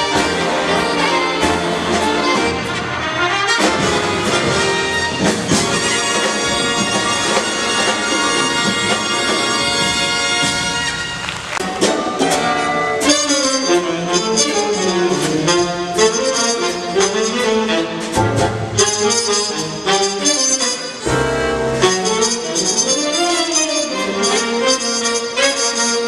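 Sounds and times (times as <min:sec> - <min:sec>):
big band playing live: 0:00.0 - 0:26.0
drums hitting: 0:03.6 - 0:10.9, 0:18.0 - 0:19.1.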